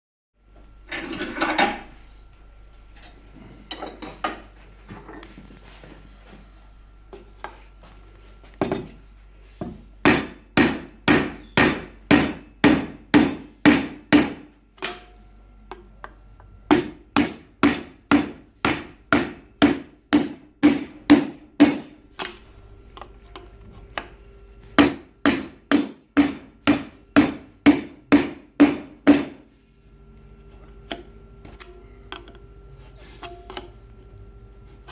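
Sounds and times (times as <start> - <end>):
hammer striking steel chisel: 10.0 - 15.2, 16.7 - 22.0, 24.8 - 29.4.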